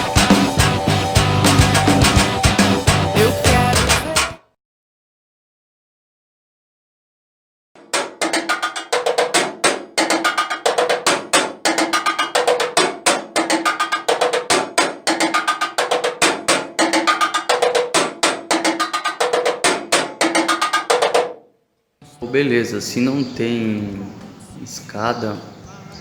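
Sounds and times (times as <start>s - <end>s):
branches drumming on staircase: 0.0s - 4.2s, 7.8s - 21.4s.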